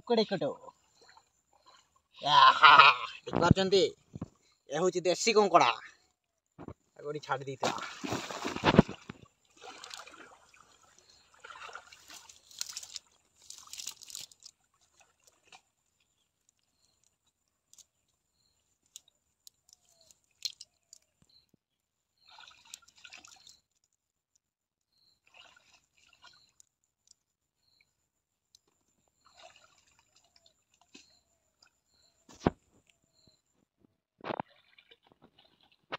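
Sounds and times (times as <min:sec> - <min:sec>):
water splashing and dripping: 0:06.6 - 0:17.9, 0:18.8 - 0:21.2, 0:22.2 - 0:24.0, 0:25.2 - 0:27.2, 0:28.6 - 0:31.7, 0:34.3 - 0:35.9
small clicks: 0:18.8 - 0:21.2.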